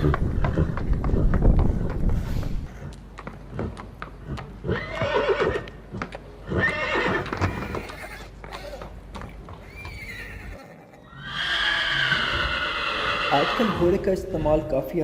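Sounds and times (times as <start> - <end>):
hoof clops: 0.0 - 10.6
horse neighing: 4.6 - 5.7, 6.4 - 8.8, 9.6 - 14.4.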